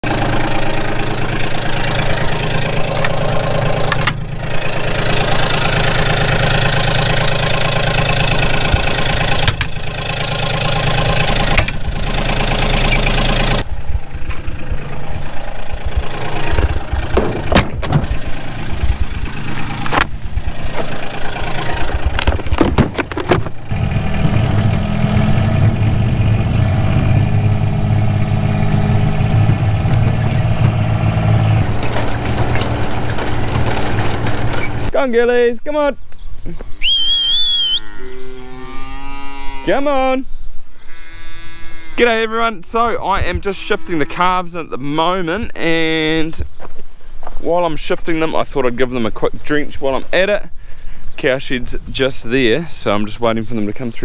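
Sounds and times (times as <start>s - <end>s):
vehicle engine running: 0.0s - 35.0s
irregular knocks: 22.0s - 34.9s.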